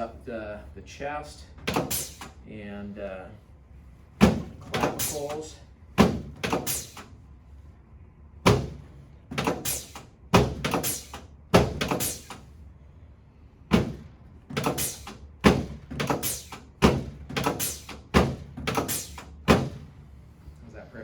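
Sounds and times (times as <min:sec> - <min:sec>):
knocks and thuds on treatment table: 0:04.2 - 0:05.1, 0:08.4 - 0:09.7.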